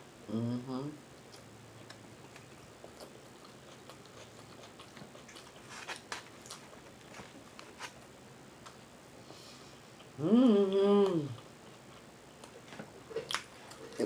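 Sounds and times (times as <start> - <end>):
person chewing food: 1.2 - 10.2, 11.1 - 14.0.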